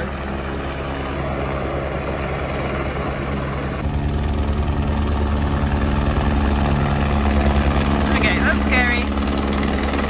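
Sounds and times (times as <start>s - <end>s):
helicopter rotor beating: 0.0s - 10.0s.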